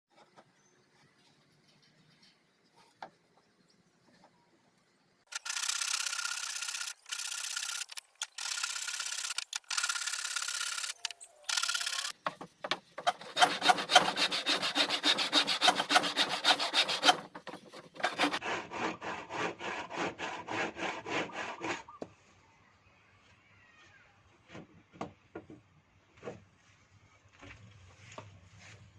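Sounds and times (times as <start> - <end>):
hand saw cutting wood: 13.0 - 22.0.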